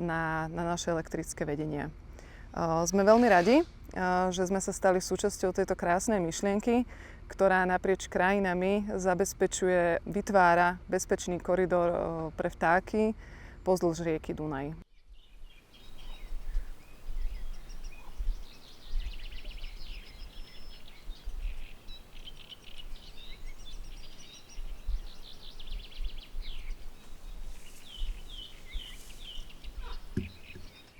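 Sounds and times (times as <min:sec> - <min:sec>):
songbirds chirping and trilling: 0:14.8 - 0:30.9
wind rumbling on microphone: 0:15.0 - 0:30.9.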